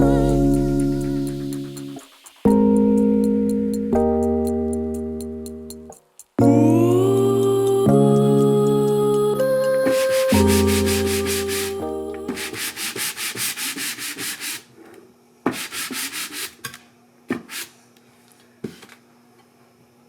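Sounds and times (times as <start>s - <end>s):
background music: 0.0s - 12.8s
sandpaper sanding wood: 9.8s - 14.7s, 15.5s - 16.6s.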